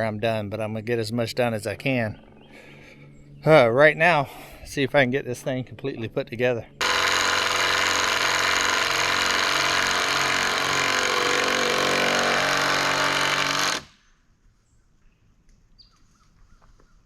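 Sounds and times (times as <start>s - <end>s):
impact driver driving screw into wood: 6.8s - 14.0s.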